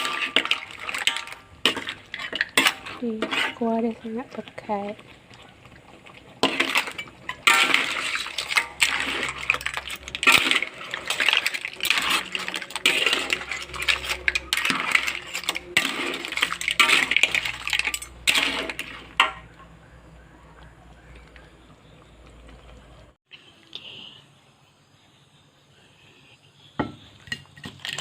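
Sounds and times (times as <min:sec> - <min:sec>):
shells clattering in a pot: 0:00.0 - 0:19.7, 0:27.2 - 0:28.0.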